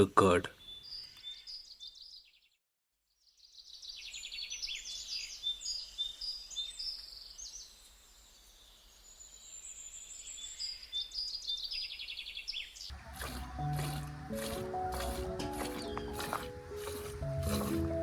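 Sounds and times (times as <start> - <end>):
small birds chirping and twittering: 0.0 - 2.6, 3.2 - 18.0.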